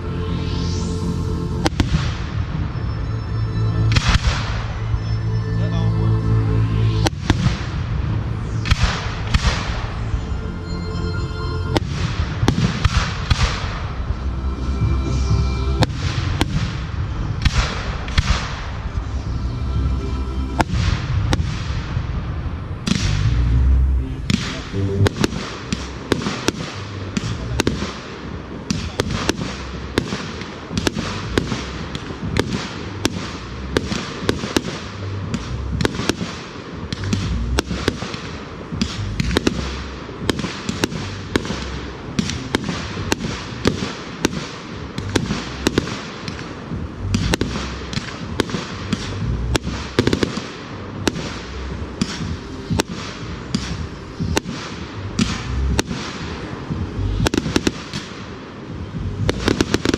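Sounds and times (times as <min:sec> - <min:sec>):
low rumbling boom: 0:00.0 - 0:44.1, 0:44.7 - 0:59.9
fireworks cracks and booms: 0:01.6 - 0:02.8, 0:03.9 - 0:04.8, 0:07.0 - 0:10.3, 0:11.7 - 0:14.1, 0:14.8 - 0:19.1, 0:20.6 - 0:23.4, 0:24.3 - 0:59.9.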